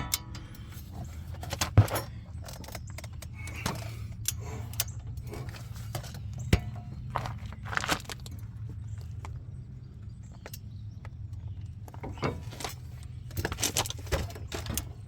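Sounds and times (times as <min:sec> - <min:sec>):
metal tools clinking: 0:00.0 - 0:07.4
low steady hum: 0:00.0 - 0:15.0.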